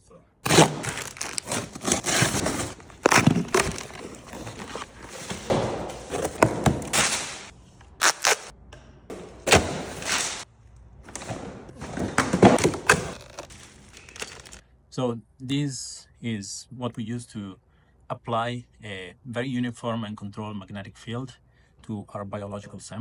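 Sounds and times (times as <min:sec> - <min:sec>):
knocks and thuds: 0:00.5 - 0:07.5
packaging rustling and crackling: 0:00.5 - 0:08.5, 0:11.1 - 0:14.6.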